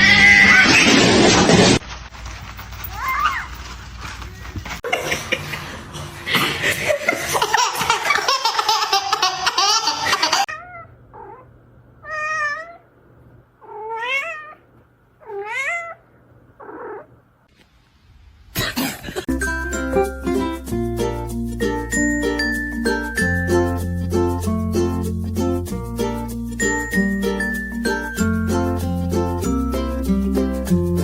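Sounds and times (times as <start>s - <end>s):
cat meowing: 0.0s - 0.8s, 10.5s - 12.9s, 13.6s - 17.1s.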